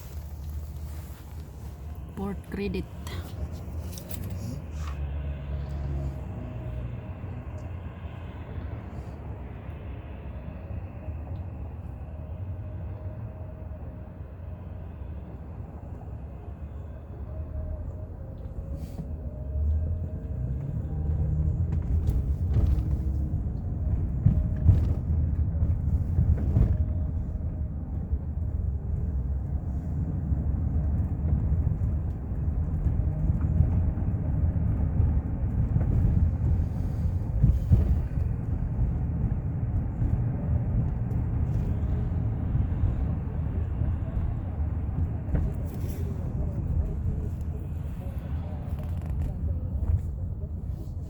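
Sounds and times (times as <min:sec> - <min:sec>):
wind buffeting microphone: 0:19.5 - 0:51.0.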